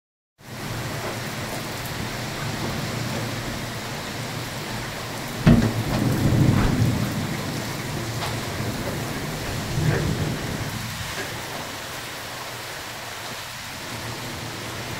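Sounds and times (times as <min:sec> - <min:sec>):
heavy rain: 0:00.4 - 0:14.9
thunder crack rumbling: 0:05.3 - 0:11.8.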